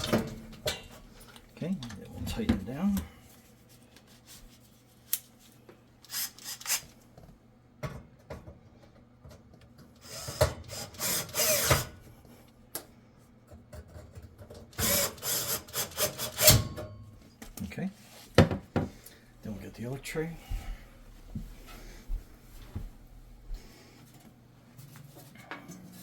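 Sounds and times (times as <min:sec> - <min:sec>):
power drill driving screws: 0:06.1 - 0:06.9, 0:10.0 - 0:11.9, 0:14.8 - 0:16.6.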